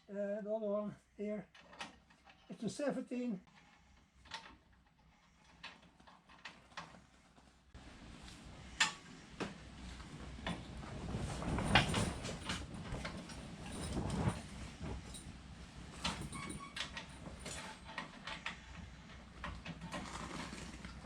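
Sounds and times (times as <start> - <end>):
hand tools and bolts clinking: 16.0 - 21.0.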